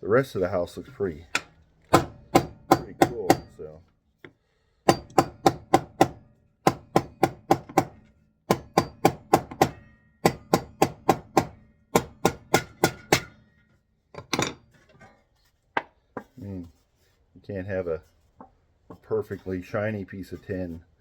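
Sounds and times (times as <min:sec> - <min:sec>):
hammer beating tin sheet: 0:01.9 - 0:03.6, 0:04.9 - 0:13.4.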